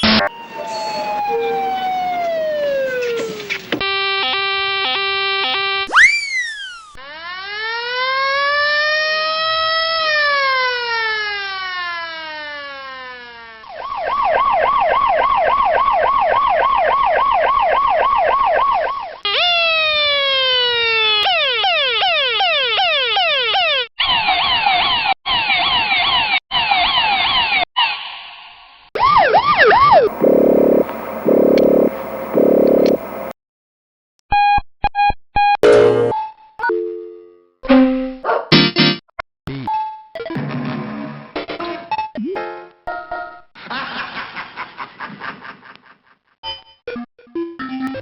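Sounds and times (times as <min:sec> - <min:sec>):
electronic siren: 0:00.0 - 0:21.4, 0:29.0 - 0:33.3.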